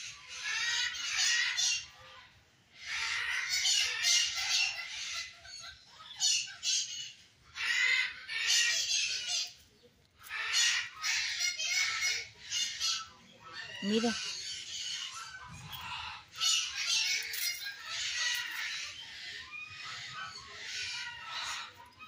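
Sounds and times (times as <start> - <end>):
birds squawking: 0.0 - 22.0.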